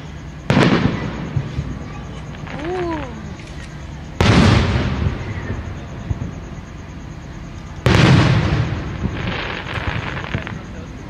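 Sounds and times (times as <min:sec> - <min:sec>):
fireworks shell booming: 0:00.4 - 0:03.3, 0:04.1 - 0:06.5, 0:07.8 - 0:10.8.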